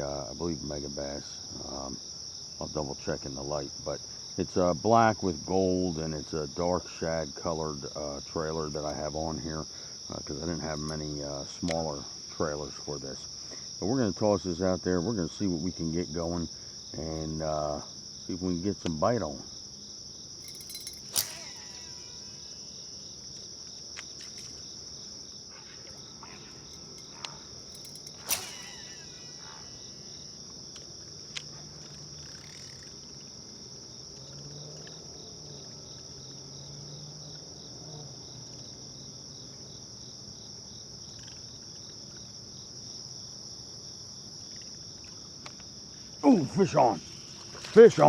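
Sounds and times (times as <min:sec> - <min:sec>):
night insects chirring: 0:00.0 - 0:48.0
short sharp clicks: 0:20.4 - 0:21.9, 0:26.8 - 0:29.2.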